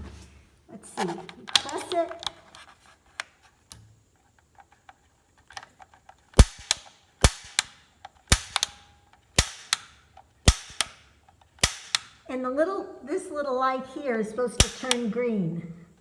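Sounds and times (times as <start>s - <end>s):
lighter click: 6.4s - 7.7s, 14.6s - 15.1s
pilot igniter snaps: 6.4s - 12.3s, 14.6s - 15.2s.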